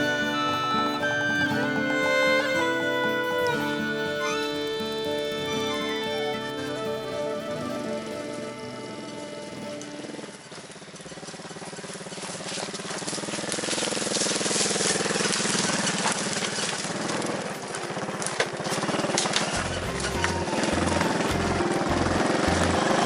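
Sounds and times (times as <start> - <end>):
small motorcycle engine running: 0.0 - 17.5.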